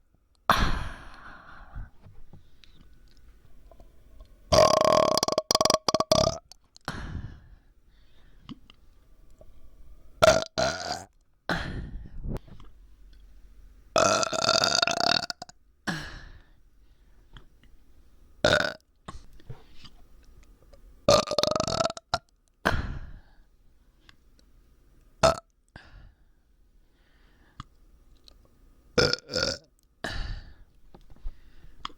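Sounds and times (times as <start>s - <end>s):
person burping: 0.5s - 1.4s, 4.5s - 7.0s, 10.2s - 11.7s, 14.0s - 16.2s, 18.4s - 18.8s, 21.1s - 22.9s, 29.0s - 29.7s.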